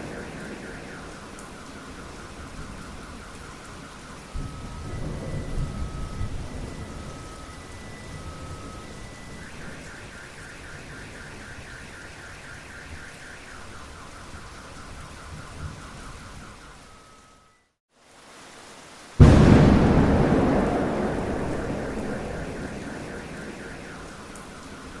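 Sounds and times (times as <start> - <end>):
low thunder rumble: 0.0 - 3.4, 4.3 - 9.6, 19.2 - 25.0
steady rain: 0.0 - 25.0.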